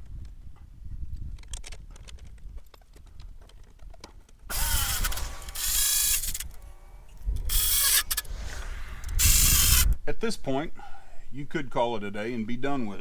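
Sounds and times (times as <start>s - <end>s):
fastening tool rasping: 4.5s - 10.0s.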